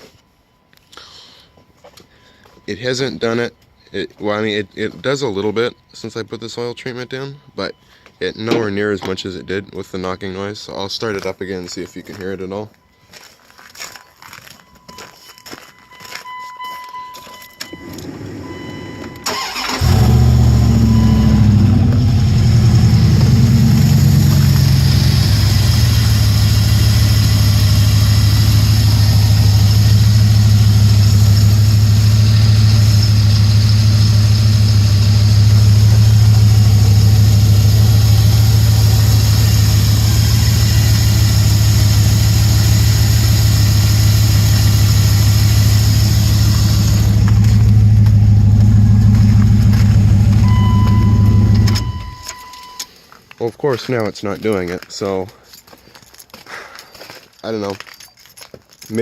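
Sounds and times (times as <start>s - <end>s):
truck engine starting and idling: 17.6s - 53.0s.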